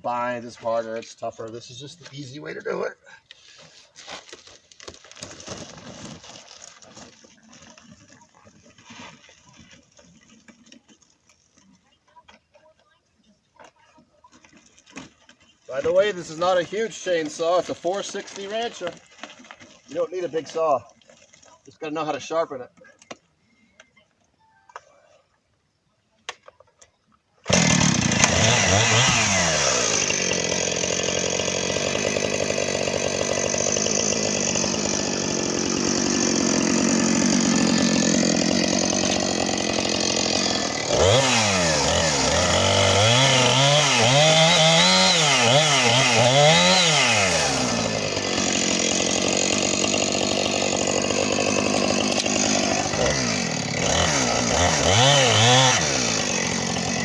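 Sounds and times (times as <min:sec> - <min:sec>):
chainsaw cutting log: 0:04.2 - 0:11.5, 0:14.4 - 0:20.0, 0:27.4 - 0:57.0.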